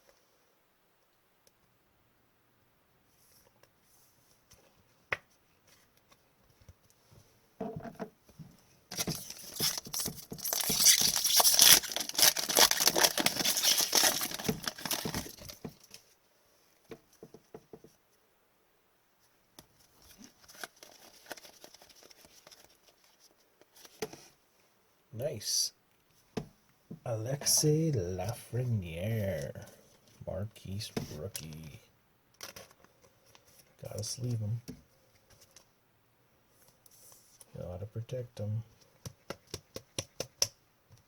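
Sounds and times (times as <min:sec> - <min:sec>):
wrapper tearing and crinkling: 0:08.9 - 0:16.0, 0:20.0 - 0:23.0.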